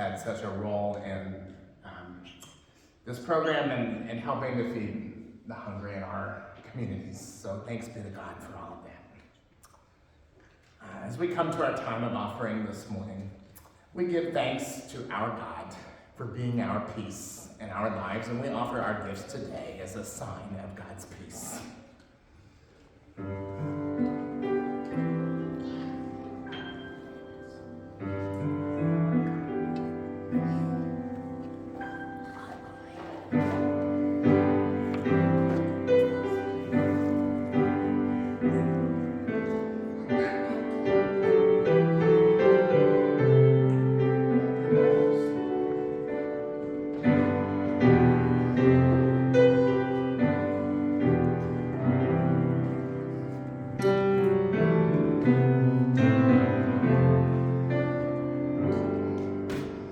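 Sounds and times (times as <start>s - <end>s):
slow piano piece: 23.0s - 59.9s.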